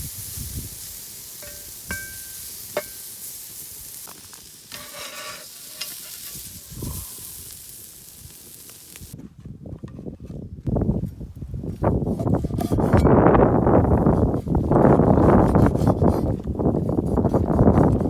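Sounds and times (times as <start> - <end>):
steak sizzling in a pan: 0.0 - 9.2
metal utensil clinking on pan: 1.4 - 3.1.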